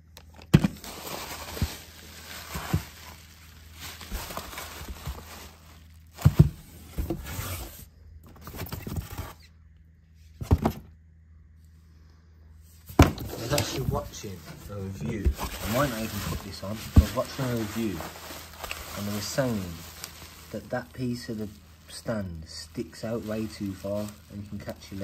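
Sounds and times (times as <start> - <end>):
packaging rustling: 0.3 - 7.7, 13.0 - 25.0
knocks and thuds of parts: 6.2 - 7.2, 10.4 - 11.0, 12.9 - 14.0.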